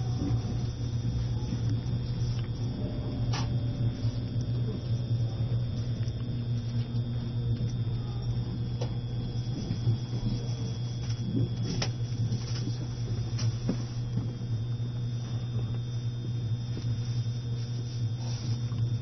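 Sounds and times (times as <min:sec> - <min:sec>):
train rumble: 0:00.0 - 0:14.4
electric train hum: 0:00.0 - 0:19.0.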